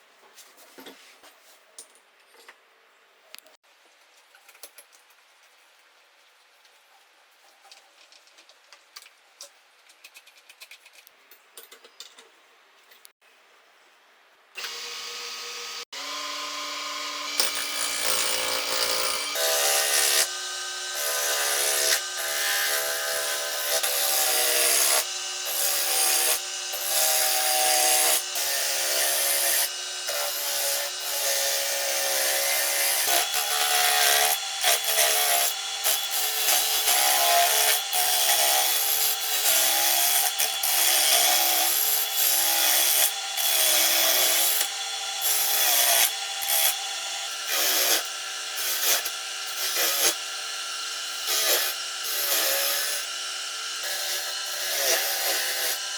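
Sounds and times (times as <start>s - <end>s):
electric power tool running: 14.6s - 55.9s.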